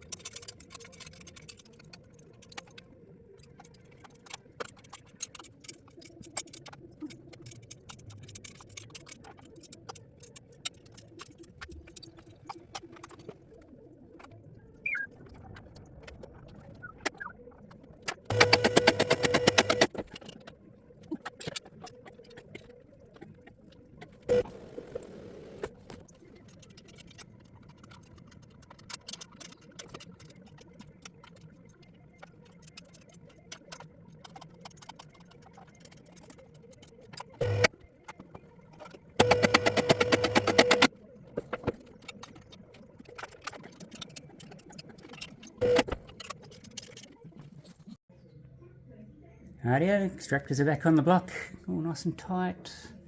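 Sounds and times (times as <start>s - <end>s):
burst of rapid clicking: 39.2s - 40.9s.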